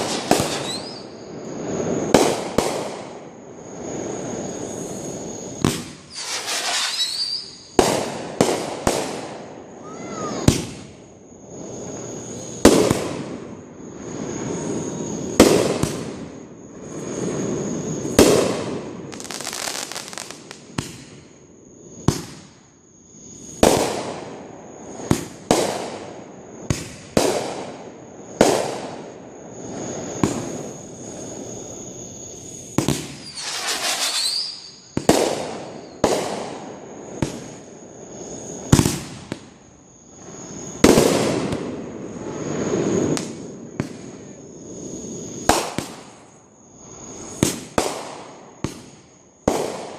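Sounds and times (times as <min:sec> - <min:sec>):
firework rising whistle: 0:00.0 - 0:21.0, 0:29.5 - 0:39.5, 0:40.1 - 0:47.7
fireworks bangs with crackle: 0:00.0 - 0:49.9.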